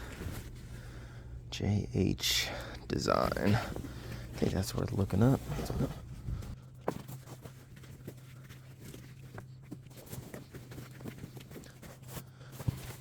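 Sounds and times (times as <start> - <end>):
low steady hum: 0.0 - 13.0
taps and rustles of handled items: 6.8 - 13.0.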